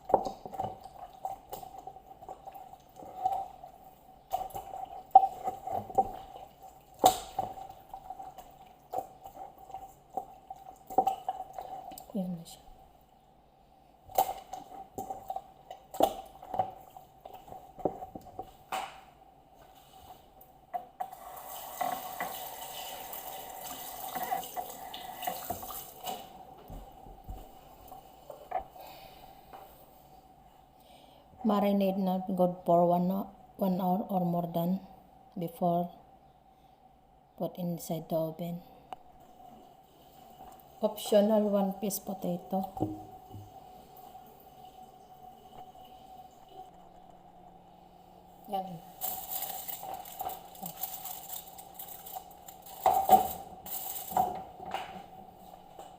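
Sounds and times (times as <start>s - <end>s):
tap running into sink: 42.8s - 43.5s.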